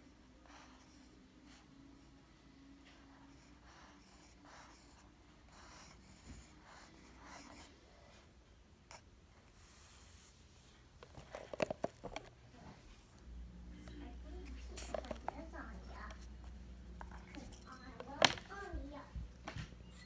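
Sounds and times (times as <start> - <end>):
pencil scratching on paper: 0.4 - 1.7, 2.9 - 7.8.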